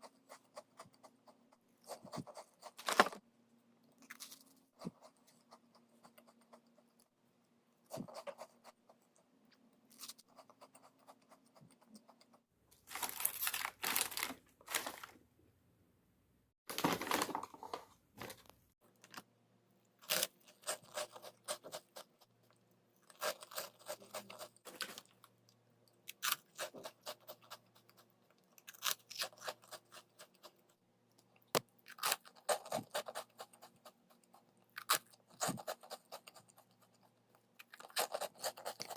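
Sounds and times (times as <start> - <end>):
crunchy food being chewed: 3.7 - 7.1, 19.9 - 38.9
plastic packaging crinkling and tearing: 12.8 - 15.2, 16.7 - 18.4.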